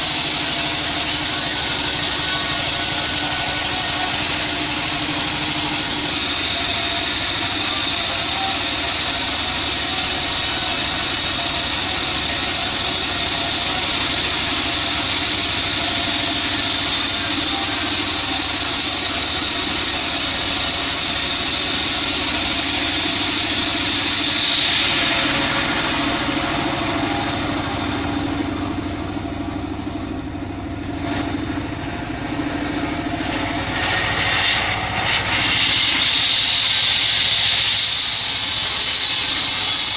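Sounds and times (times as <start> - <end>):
bandsaw blade cutting log: 0.0 - 30.1, 33.7 - 39.9
sawmill drive humming: 0.0 - 39.9.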